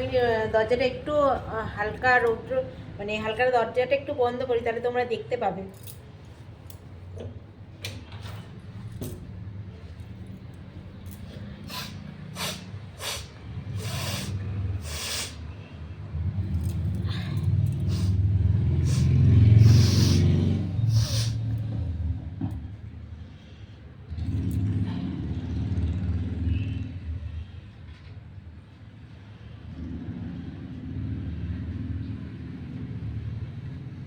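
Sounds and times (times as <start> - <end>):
vehicle engine rumbling past: 10.7 - 22.8, 24.1 - 27.7, 29.5 - 34.0
short sharp hissing sounds: 11.6 - 15.5, 17.8 - 18.2, 18.8 - 21.6.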